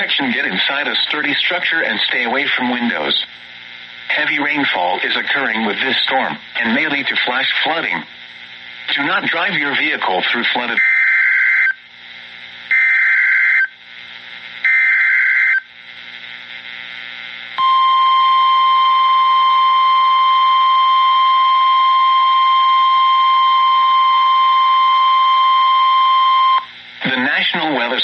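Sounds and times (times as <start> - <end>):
radio hiss: 0.0 - 10.9, 11.5 - 17.6, 26.6 - 28.0.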